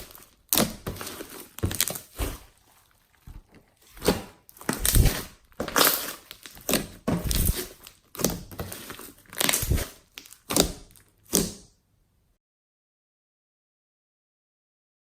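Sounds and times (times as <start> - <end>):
slime squishing: 0.0 - 11.7.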